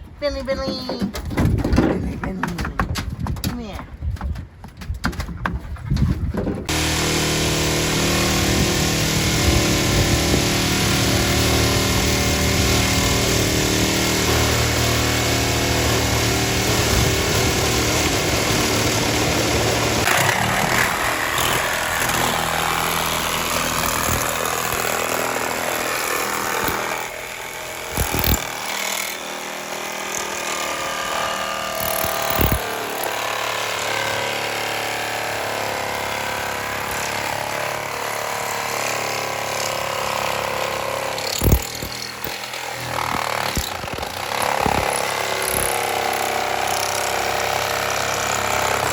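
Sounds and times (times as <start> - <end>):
power tool cutting: 6.7 - 48.9
sharp knocks: 41.3 - 46.0.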